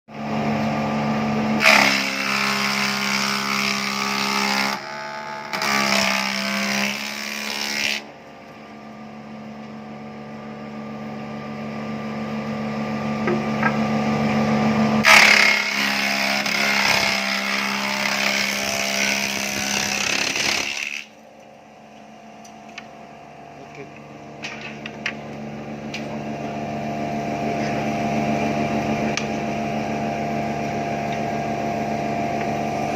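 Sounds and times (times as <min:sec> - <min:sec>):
machine motor hum: 0:00.1 - 0:32.9
machine cutting wood: 0:01.6 - 0:08.1, 0:15.0 - 0:21.2.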